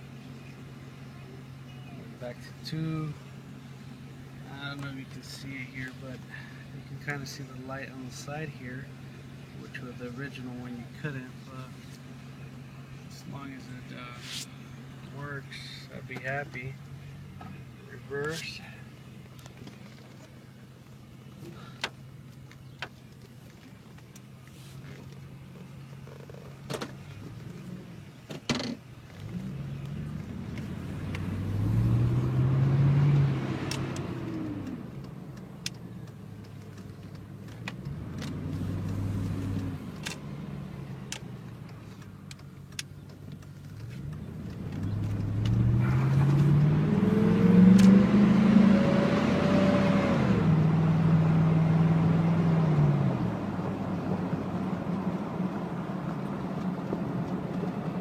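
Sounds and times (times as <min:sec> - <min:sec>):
pickup truck engine: 0:00.0 - 0:58.0.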